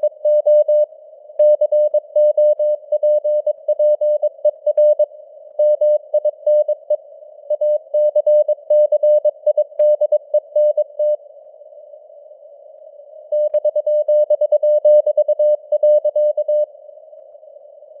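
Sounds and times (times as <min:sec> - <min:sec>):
morse code beeping tone: 0:13.4 - 0:16.6.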